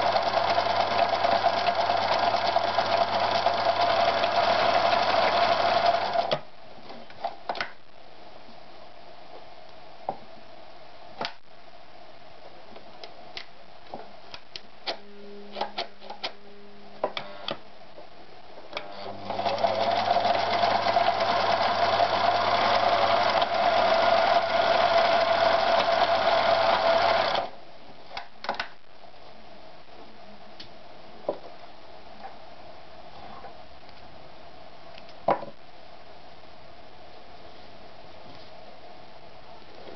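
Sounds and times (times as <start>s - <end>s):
sewing machine stitching: 0.0s - 6.4s, 18.8s - 27.5s.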